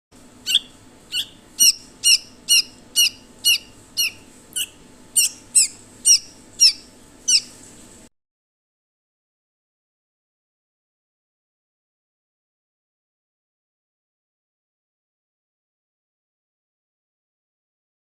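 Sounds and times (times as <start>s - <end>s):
faint steady hum: 0.2s - 8.1s
bird giving harsh high calls: 0.4s - 7.6s.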